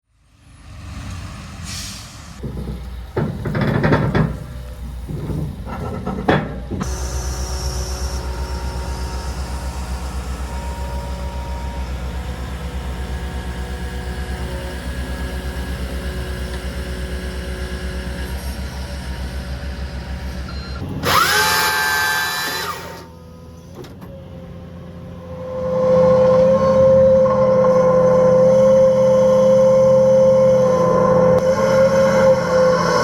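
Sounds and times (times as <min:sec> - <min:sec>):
loud knocks and rattles: 0:02.4 - 0:06.9
excavator diesel engine idling: 0:02.4 - 0:21.2.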